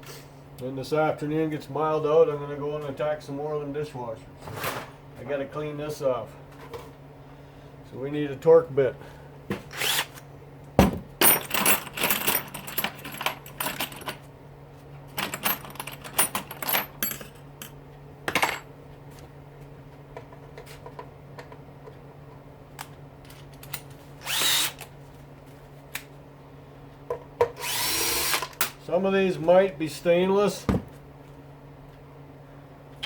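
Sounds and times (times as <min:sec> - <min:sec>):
steady low hum: 0:00.0 - 0:33.0
power drill whirring: 0:09.7 - 0:10.2, 0:24.2 - 0:24.8, 0:27.6 - 0:28.6
metal parts clattering: 0:11.2 - 0:14.2, 0:15.2 - 0:17.4.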